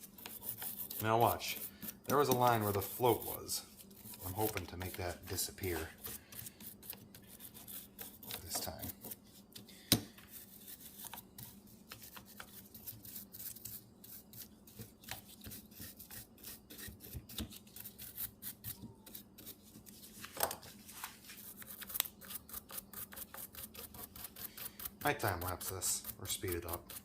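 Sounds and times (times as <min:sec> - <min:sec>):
napkin rubbing inside metal bowl: 0:00.0 - 0:09.2.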